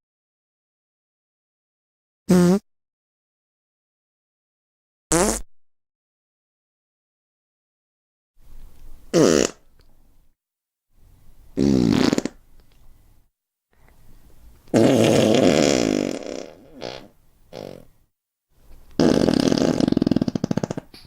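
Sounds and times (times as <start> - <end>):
fart sounds: 2.3 - 2.6, 5.1 - 5.5, 9.1 - 9.7, 11.6 - 12.4, 14.7 - 17.9, 19.0 - 21.0.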